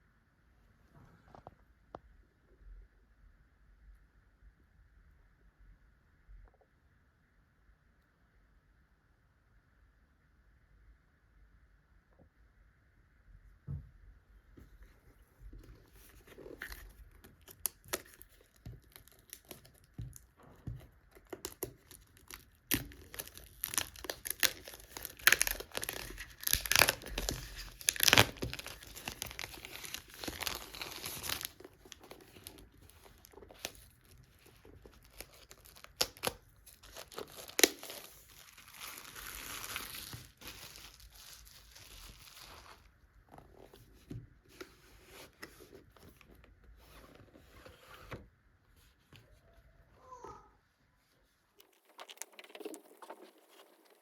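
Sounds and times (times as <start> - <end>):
packaging crinkling and tearing: 15.8 - 43.8.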